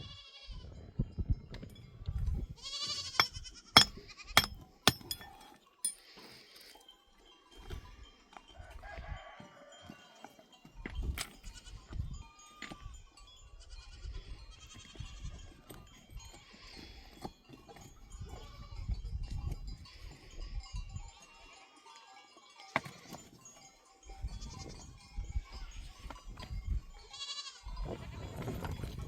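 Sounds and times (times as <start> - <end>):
goats bleating: 2.6 - 4.2, 27.1 - 27.7.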